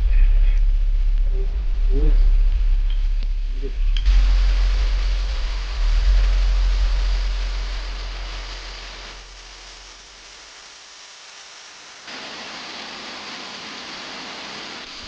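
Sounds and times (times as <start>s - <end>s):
low rumble: 0.0s - 10.3s
steady rushing noise: 0.0s - 10.6s.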